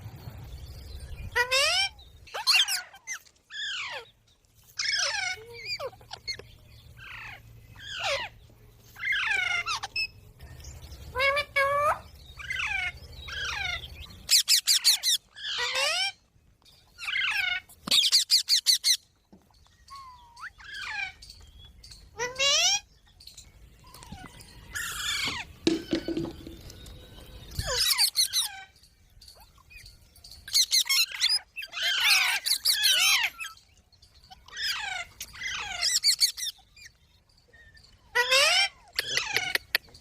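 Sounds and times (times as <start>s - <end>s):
parrot screeching: 1.4s - 4.1s, 4.8s - 6.2s, 7.0s - 8.3s, 9.0s - 10.1s, 11.2s - 16.2s, 22.2s - 22.8s, 30.5s - 33.6s, 34.3s - 36.6s, 38.1s - 39.6s
parrot squawking: 1.4s - 4.1s, 4.8s - 6.4s, 11.1s - 16.2s, 30.5s - 33.6s, 38.1s - 39.8s.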